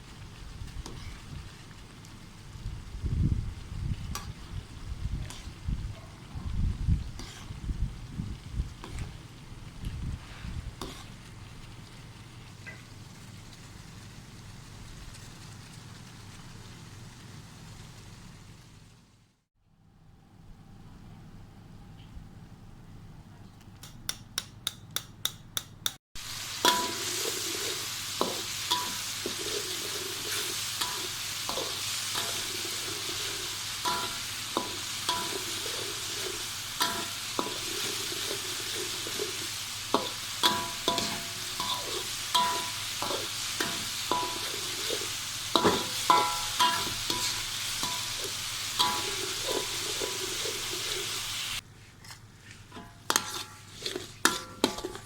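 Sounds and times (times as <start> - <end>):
onions sizzling in hot oil: 0.0 - 19.3, 26.2 - 51.6, 52.7 - 55.0
metal spatula scraping pan: 7.2 - 7.6, 10.8 - 11.1, 26.5 - 51.6, 52.5 - 55.0.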